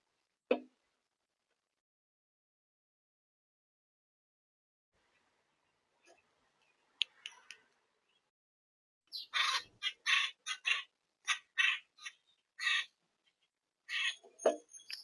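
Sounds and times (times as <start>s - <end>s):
blue jay harsh calls: 9.1s - 12.9s, 13.9s - 14.2s.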